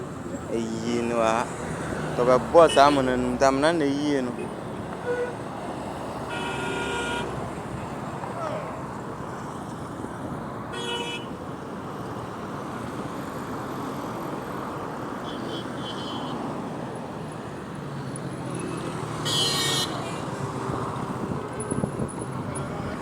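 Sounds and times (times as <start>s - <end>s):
road traffic noise: 0.0s - 23.0s
vehicle horn toots: 5.0s - 5.4s, 6.3s - 7.4s, 10.8s - 11.3s, 15.2s - 16.4s, 19.2s - 20.2s.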